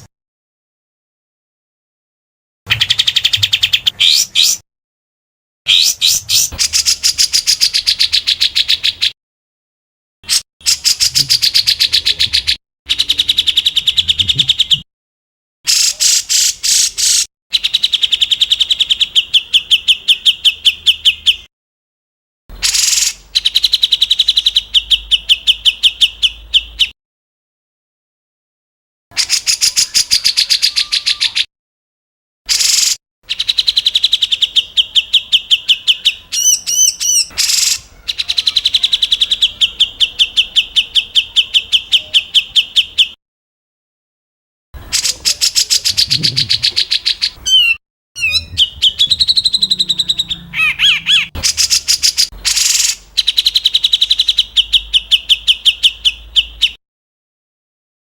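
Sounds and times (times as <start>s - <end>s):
songbird call sharp repeated notes: 5.7s - 9.2s, 10.2s - 14.8s, 15.7s - 21.5s, 22.5s - 26.9s, 32.5s - 43.2s, 44.8s - 56.8s.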